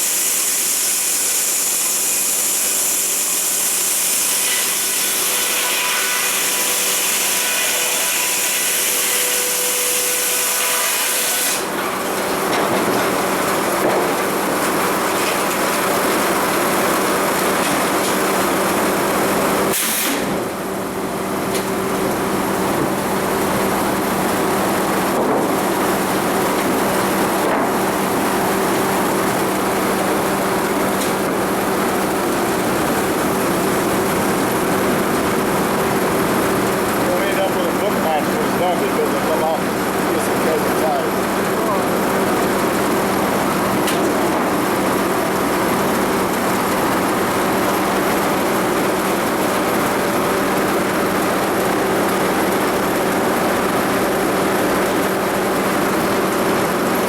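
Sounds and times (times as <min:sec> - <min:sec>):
saw cutting log: 0:00.0 - 0:16.0, 0:19.6 - 0:20.5
sawmill machine hum: 0:00.0 - 0:57.0.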